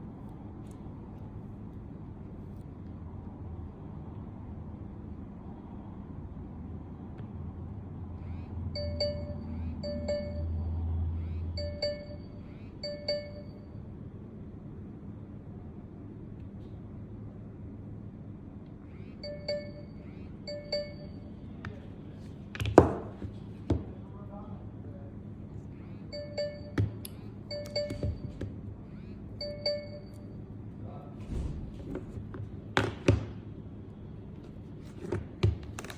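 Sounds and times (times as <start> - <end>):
phone ringtone chimes: 8.7 - 10.8, 11.5 - 13.8, 19.2 - 21.5, 26.1 - 28.5, 29.4 - 30.5.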